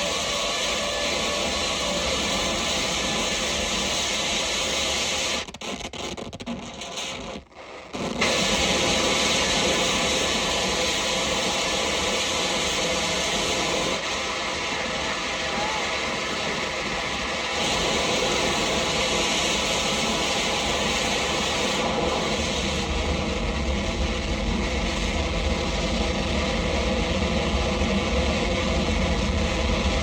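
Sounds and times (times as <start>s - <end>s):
faint steady drones: 0.0s - 5.4s
harsh static noise music: 0.0s - 6.0s, 6.9s - 30.0s.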